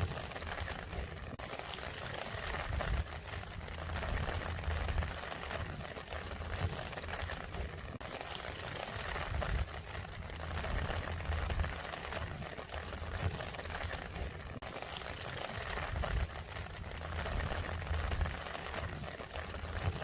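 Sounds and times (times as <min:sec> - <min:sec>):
rain falling: 0:00.0 - 0:20.0
low rumble: 0:02.7 - 0:07.9, 0:09.2 - 0:14.4, 0:15.8 - 0:18.8.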